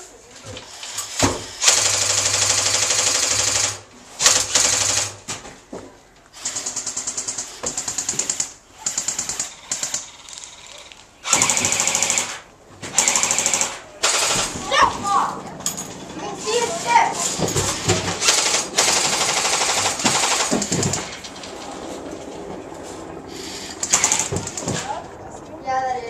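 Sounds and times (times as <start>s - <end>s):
airsoft guns firing bursts: 1.6s - 5.2s, 6.4s - 10.4s, 11.2s - 14.7s, 18.0s - 21.1s, 23.4s - 24.7s.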